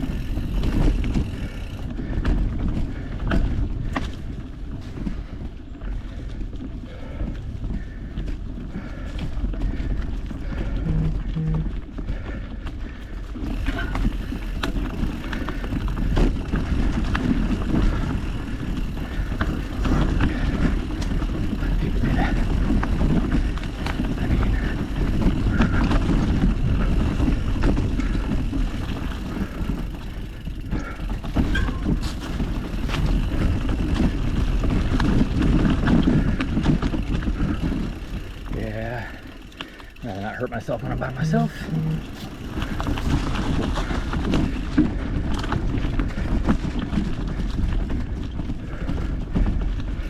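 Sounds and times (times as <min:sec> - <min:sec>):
bike rattles and knocks: 0:00.0 - 0:50.0
tyre rumble on dirt: 0:13.5 - 0:39.1.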